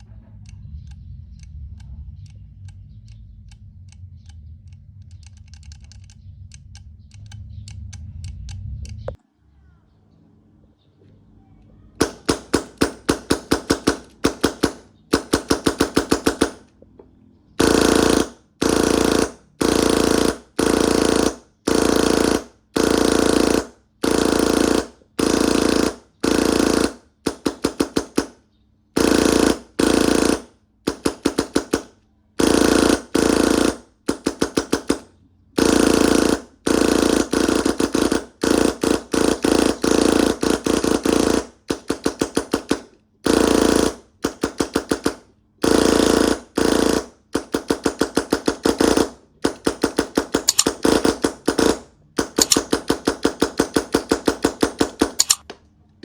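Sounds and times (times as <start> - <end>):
paintball marker firing bursts: 12.0 - 16.8, 17.6 - 55.5.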